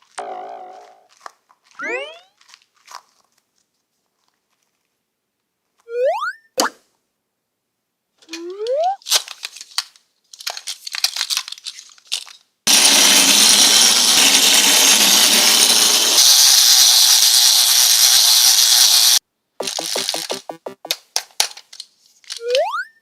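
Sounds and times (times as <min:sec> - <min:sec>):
power tool running: 0:12.7 - 0:20.8.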